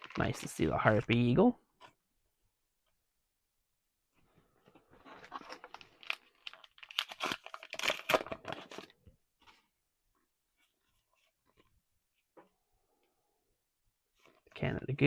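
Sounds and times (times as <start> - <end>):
foil pack crinkling and tearing: 5.1 - 9.0.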